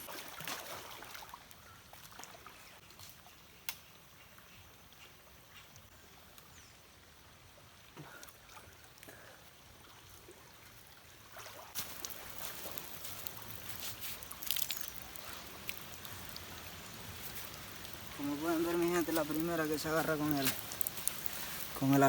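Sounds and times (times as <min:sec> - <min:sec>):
water sloshing and trickling: 0:00.0 - 0:03.4, 0:06.9 - 0:22.0
small clicks and splashes: 0:11.3 - 0:22.0.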